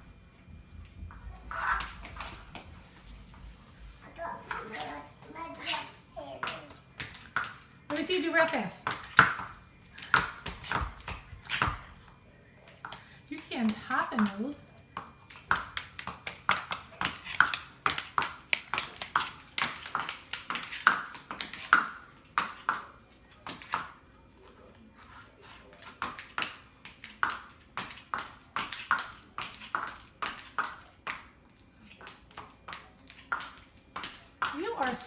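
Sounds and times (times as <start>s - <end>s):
hard-soled shoes clicking on floor: 6.2s - 24.0s, 25.8s - 35.0s.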